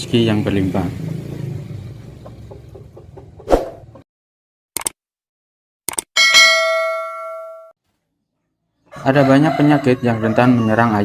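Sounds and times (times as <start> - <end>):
short clicks: 4.8 - 5.0, 5.9 - 6.1
bell ding: 6.2 - 7.8.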